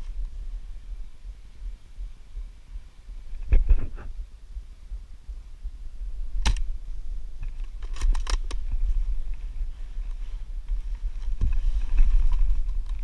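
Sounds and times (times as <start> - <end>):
low rumble of handling: 0.0 - 13.0
airsoft rifle clicks: 6.4 - 6.7, 7.4 - 8.7.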